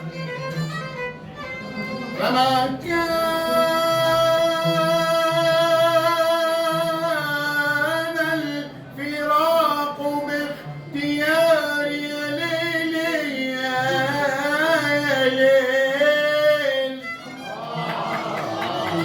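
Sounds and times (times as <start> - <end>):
plucked string accompaniment: 0.0 - 19.0
man singing: 2.1 - 19.0.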